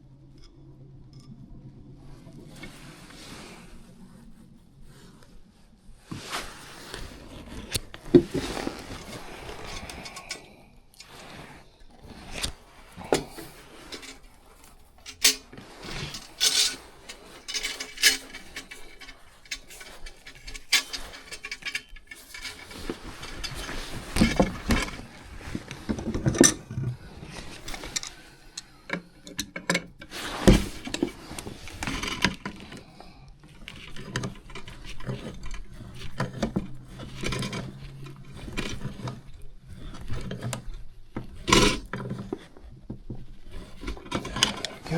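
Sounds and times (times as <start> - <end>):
metal parts and tools clinking: 8.0 - 11.2, 12.2 - 26.6, 27.3 - 32.9.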